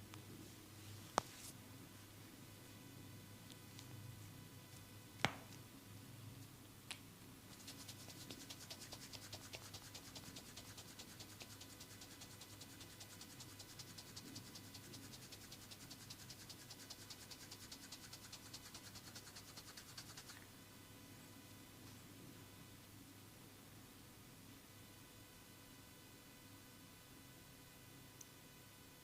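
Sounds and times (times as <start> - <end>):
hands rubbing skin crackles: 7.5 - 20.4.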